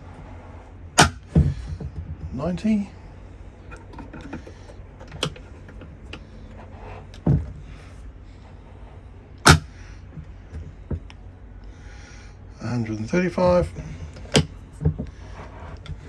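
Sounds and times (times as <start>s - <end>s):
steady low hum: 0.0s - 16.0s
seat swivel knocks and clicks: 1.0s - 2.4s, 3.7s - 6.3s, 9.5s - 9.7s, 14.0s - 15.2s.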